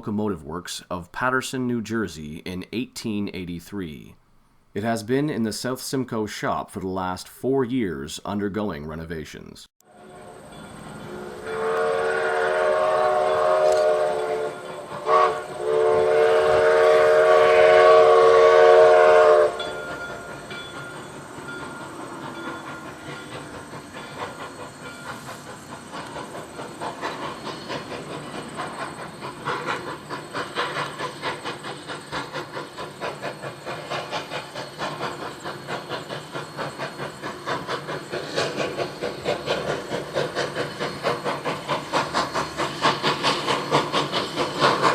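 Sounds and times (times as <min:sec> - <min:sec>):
steam whistle blasts: 0:09.9 - 0:20.1
steam locomotive chuffing: 0:09.9 - 0:44.9.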